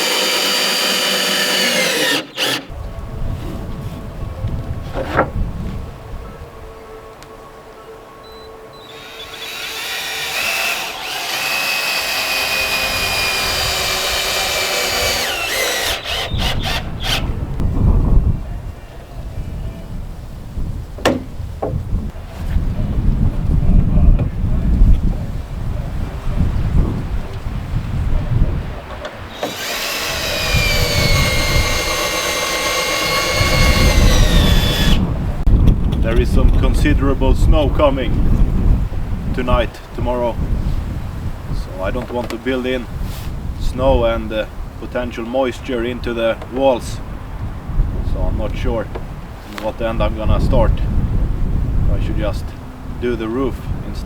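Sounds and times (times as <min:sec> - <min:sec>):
power drill running: 0:00.0 - 0:02.7, 0:08.8 - 0:17.3, 0:29.3 - 0:35.0
wind buffeting microphone: 0:00.0 - 0:07.1, 0:09.0 - 0:54.0.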